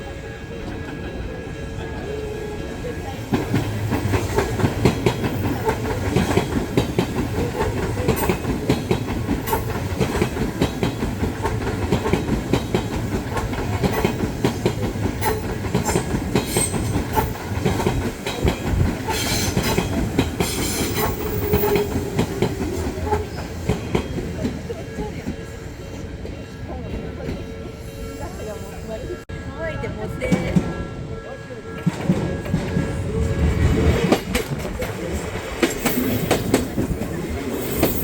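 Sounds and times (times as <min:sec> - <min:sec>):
train wheels clattering over joints: 0:02.7 - 0:25.4, 0:31.8 - 0:38.0.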